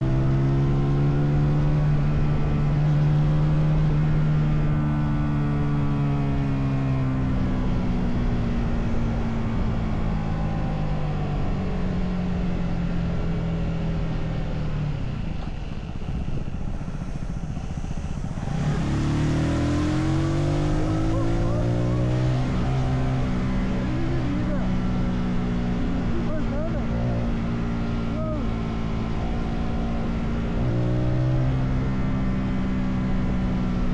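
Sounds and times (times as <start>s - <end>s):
motorcycle engine and exhaust: 0.0s - 33.9s
wind noise: 14.8s - 25.7s.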